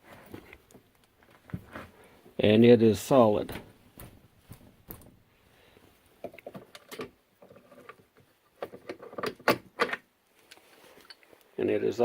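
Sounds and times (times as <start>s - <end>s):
metal clicks and clunks: 6.2s - 11.2s.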